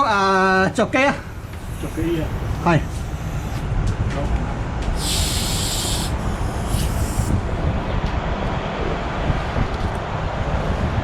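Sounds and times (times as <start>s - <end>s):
low background rumble: 0.6s - 8.5s
short bright hiss: 1.2s - 3.7s, 5.0s - 7.4s.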